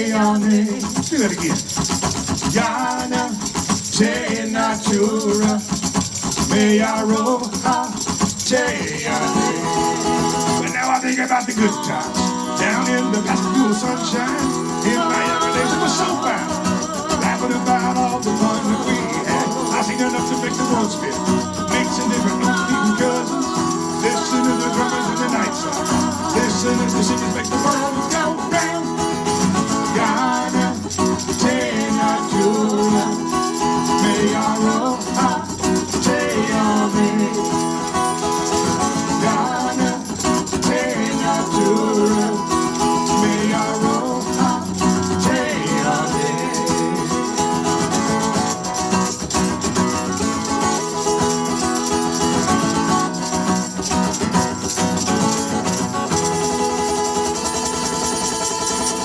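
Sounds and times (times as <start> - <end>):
live band guitars playing: 0.0 - 59.0
rattling shaker: 0.0 - 59.0.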